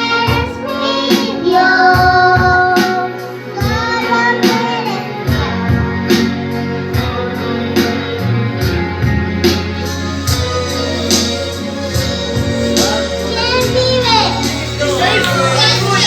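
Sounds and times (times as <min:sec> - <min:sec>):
girl singing: 0:00.0 - 0:05.7, 0:10.0 - 0:16.0
instrumental backing with bass and guitar: 0:00.0 - 0:16.0.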